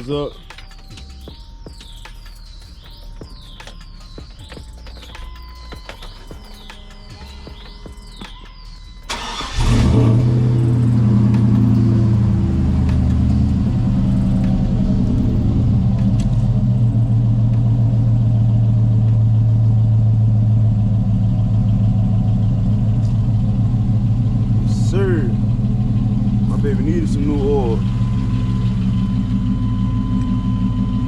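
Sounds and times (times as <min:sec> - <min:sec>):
truck engine starting and idling: 0:08.6 - 0:31.0.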